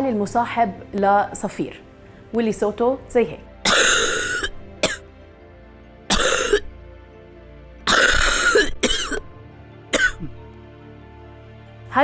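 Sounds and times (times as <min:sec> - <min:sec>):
soft background music: 0:00.0 - 0:12.0
wheezy coughing: 0:03.6 - 0:05.1, 0:06.1 - 0:06.7, 0:07.9 - 0:09.2, 0:09.9 - 0:10.4.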